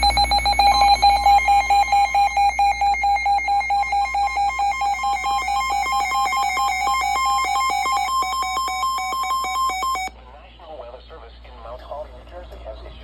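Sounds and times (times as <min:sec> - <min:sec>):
higher second alarm tone: 0:00.0 - 0:10.1
pulsing electronic alarm beep: 0:00.0 - 0:10.1.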